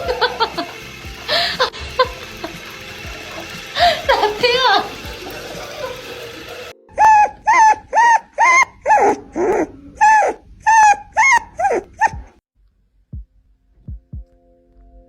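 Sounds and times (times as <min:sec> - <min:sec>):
puppy yelping: 0:07.0 - 0:12.3
faint low thuds: 0:12.1 - 0:12.4, 0:13.1 - 0:14.4.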